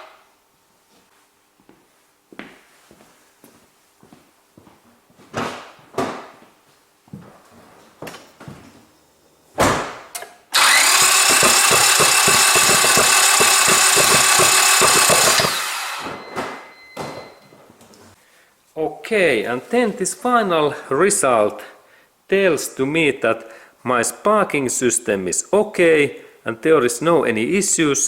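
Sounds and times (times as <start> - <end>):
starter motor cranking: 10.5 - 16.1
knocks and clicks: 11.0 - 15.6.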